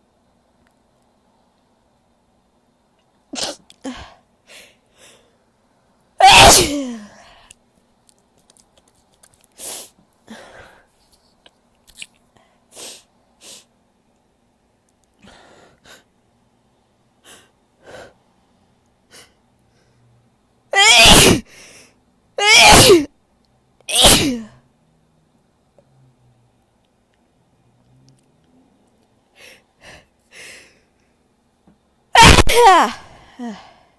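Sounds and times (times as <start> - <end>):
woman sneezing: 3.4 - 4.1, 6.2 - 7.1, 20.8 - 21.5, 22.4 - 23.1, 23.9 - 24.5, 32.2 - 33.7.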